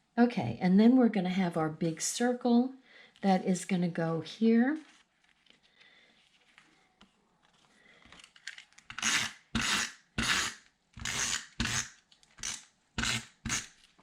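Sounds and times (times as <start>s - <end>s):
tool rasping across paper: 8.9s - 13.8s.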